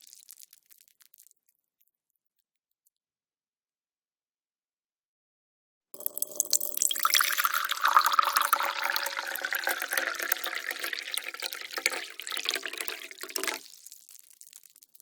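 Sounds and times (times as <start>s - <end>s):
tea pouring into a cup: 6.0s - 13.9s.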